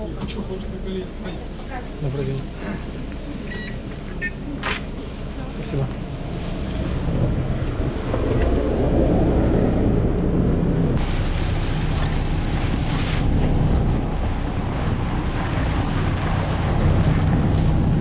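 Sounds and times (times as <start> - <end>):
blizzard wind on microphone: 5.1 - 18.0.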